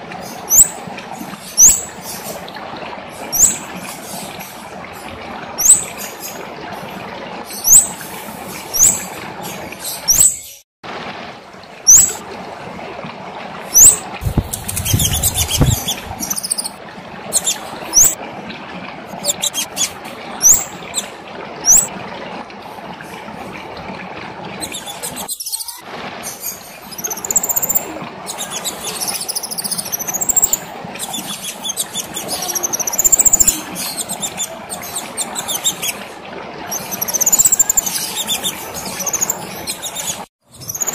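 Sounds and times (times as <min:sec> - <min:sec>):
songbird singing: 0:11.9 - 0:12.2, 0:13.8 - 0:16.8, 0:17.4 - 0:18.2, 0:19.2 - 0:21.1, 0:21.7 - 0:21.9, 0:27.0 - 0:27.8, 0:28.4 - 0:30.6, 0:31.4 - 0:35.8
rustling noise: 0:14.2 - 0:16.3.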